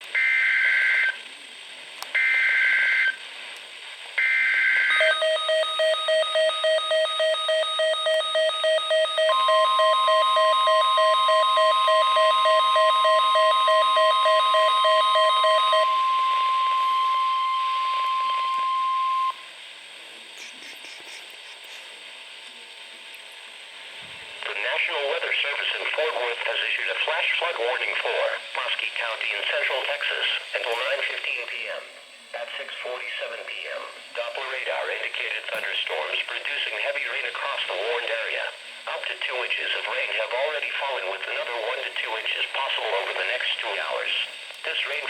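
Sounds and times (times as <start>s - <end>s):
faint radio static: 0.6s - 5.2s, 14.6s - 45.0s
steady alarm tone: 4.2s - 19.5s
fast pulsing electronic beep: 5.0s - 19.4s.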